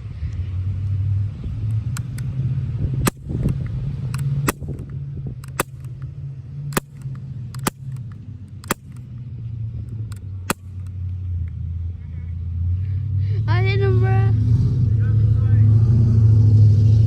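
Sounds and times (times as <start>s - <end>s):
steady low rumble: 0.0s - 17.0s
bb gun shots: 3.0s - 3.6s, 4.2s - 6.0s, 6.7s - 9.0s, 10.1s - 10.9s.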